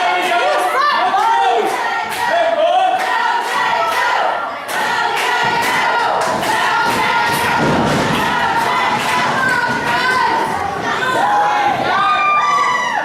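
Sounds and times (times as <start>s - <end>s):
crowd yelling and chanting: 0.0s - 13.0s
thuds: 5.2s - 11.0s.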